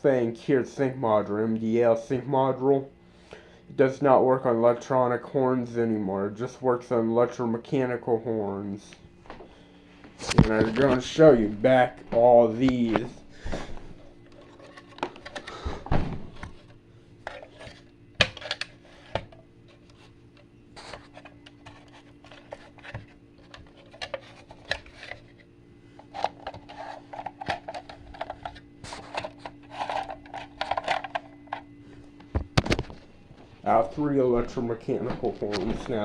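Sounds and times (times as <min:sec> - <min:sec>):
faint steady hum: 0:00.0 - 0:36.0
plastic and metal devices handled: 0:14.3 - 0:15.5, 0:16.4 - 0:31.7.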